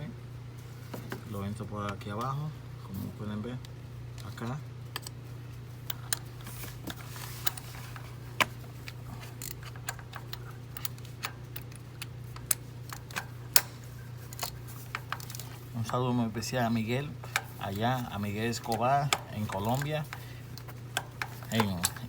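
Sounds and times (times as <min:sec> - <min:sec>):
steady low hum: 0:00.0 - 0:22.0
ratchet wrench clicking: 0:17.0 - 0:22.0.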